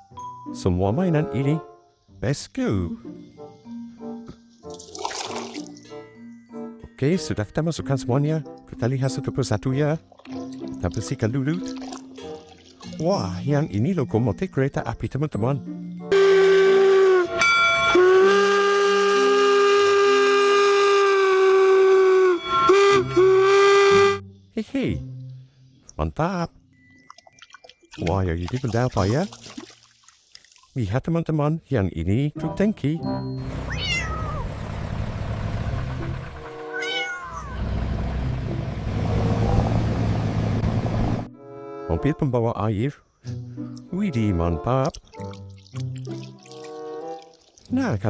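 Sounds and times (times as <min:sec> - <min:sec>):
background music: 0:00.0 - 0:29.2, 0:31.8 - 0:33.7, 0:41.3 - 0:48.0
steam locomotive whistle: 0:16.1 - 0:24.2
meow-like call: 0:33.7 - 0:34.5, 0:36.7 - 0:37.6.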